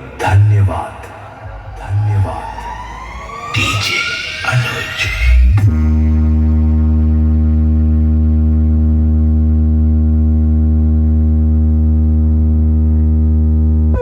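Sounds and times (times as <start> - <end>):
deep electronic bass tone: 0.0 - 14.0.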